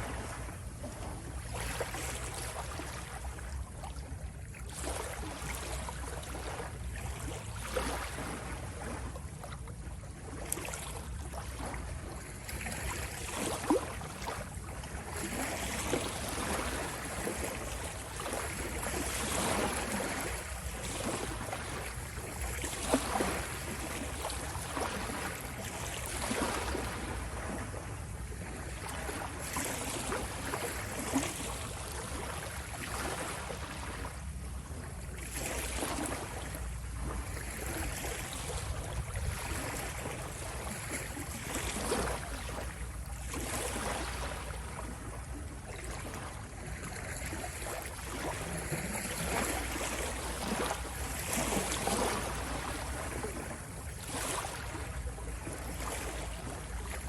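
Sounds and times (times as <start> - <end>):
ocean waves splashing: 15.2 - 27.7, 28.5 - 34.1, 46.9 - 57.0.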